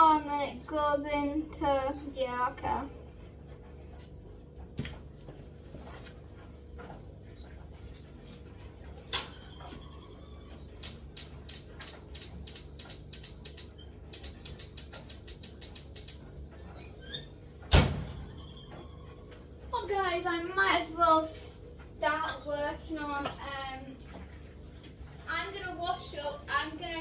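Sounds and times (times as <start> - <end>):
gas oven igniter clicking: 10.8 - 16.3.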